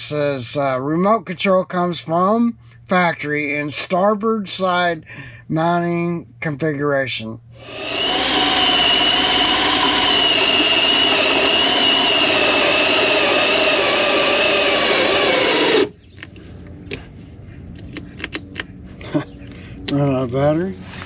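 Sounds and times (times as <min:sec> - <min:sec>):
cordless power tool whining: 0:07.6 - 0:16.0.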